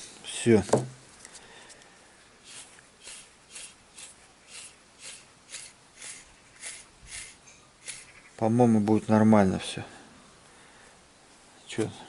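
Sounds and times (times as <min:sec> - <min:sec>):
faint rubbing strokes: 0:02.4 - 0:08.4.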